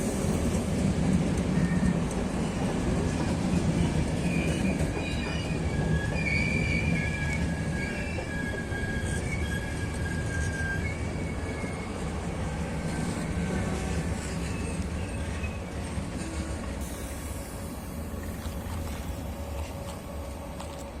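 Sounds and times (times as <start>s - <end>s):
train rail rumble: 0.0s - 21.0s
wavering wheel squeal: 4.2s - 12.1s.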